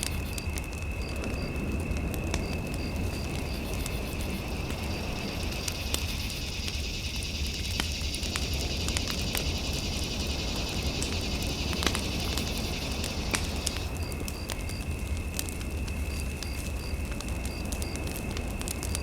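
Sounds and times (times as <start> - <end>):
fire crackling and popping: 0.0 - 19.0.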